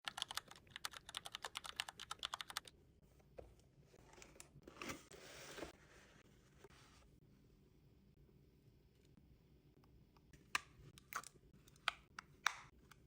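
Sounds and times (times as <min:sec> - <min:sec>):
fast typing on keyboard: 0:00.0 - 0:02.7.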